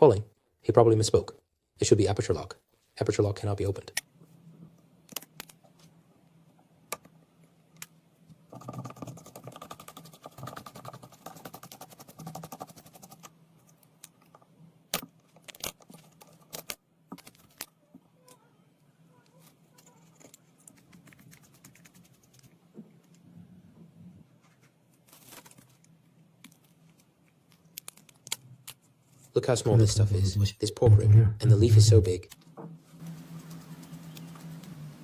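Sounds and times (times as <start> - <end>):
faint steady hum: 0.0 - 35.0.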